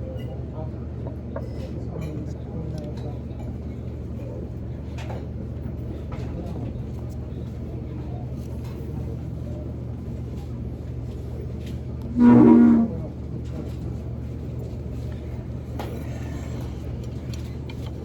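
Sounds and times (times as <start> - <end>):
low mechanical hum: 0.0 - 18.0
loud pitched tone: 12.1 - 13.0.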